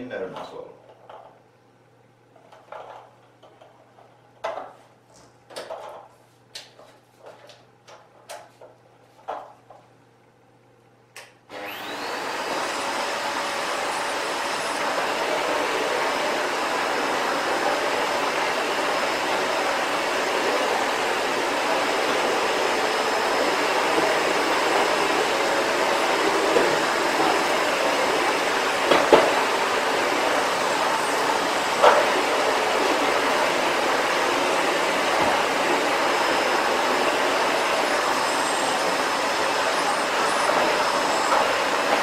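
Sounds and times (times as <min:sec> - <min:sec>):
vacuum cleaner motor whine: 0:11.5 - 0:42.0.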